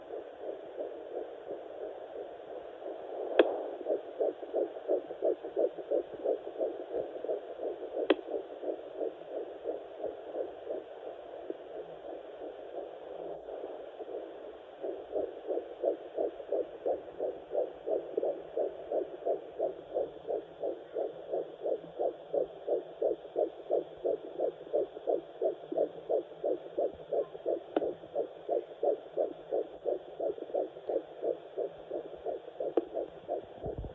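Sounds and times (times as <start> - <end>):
doppler fetal heartbeat: 0.0 - 33.9
sharp clicks: 3.4 - 3.6.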